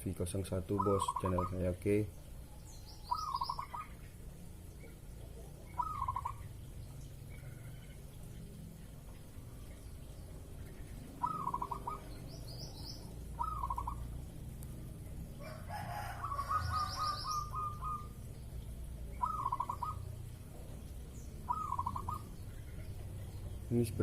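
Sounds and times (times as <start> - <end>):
small bird chirping: 0.6 - 15.5, 16.1 - 24.0
dove cooing: 0.7 - 1.8, 2.8 - 6.6, 10.4 - 22.8.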